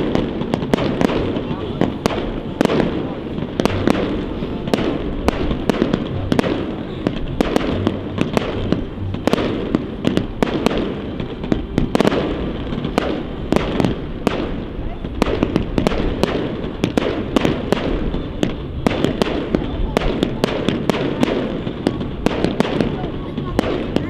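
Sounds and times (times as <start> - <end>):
fireworks bangs and crackling: 0.0 - 24.0.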